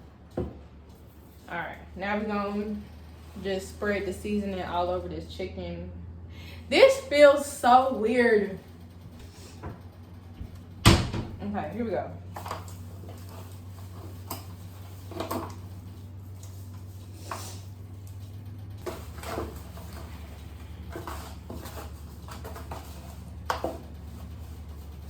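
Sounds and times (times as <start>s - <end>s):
low steady hum: 0.0s - 25.0s.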